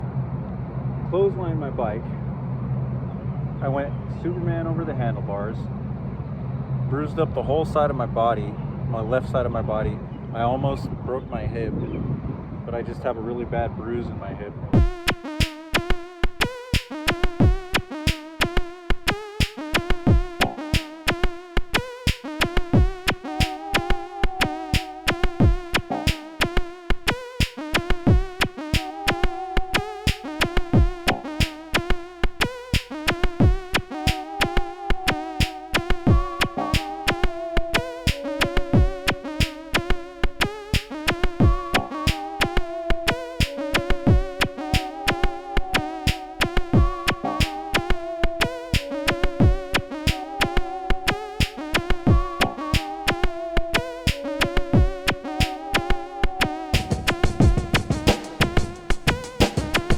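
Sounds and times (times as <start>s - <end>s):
drum machine beat: 14.8s - 59.9s
synthesizer notes: 14.8s - 59.9s.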